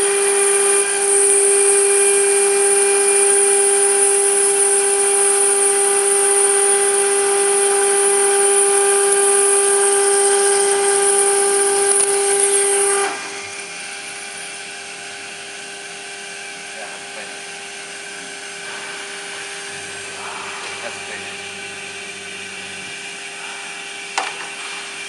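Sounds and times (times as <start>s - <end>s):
spindle running: 0.0s - 14.6s
router milling metal whine: 0.0s - 25.0s.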